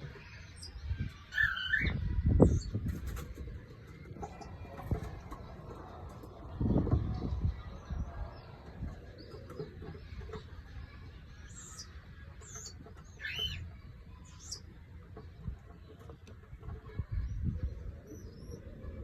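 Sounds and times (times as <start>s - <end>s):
cockatiels chirping: 1.3s - 2.8s, 11.5s - 13.6s.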